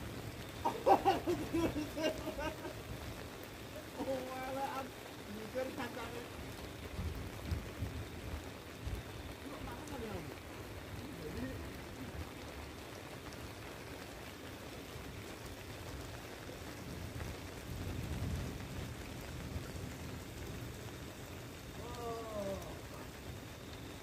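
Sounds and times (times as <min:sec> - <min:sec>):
water with rain-like patter: 0:00.0 - 0:24.0.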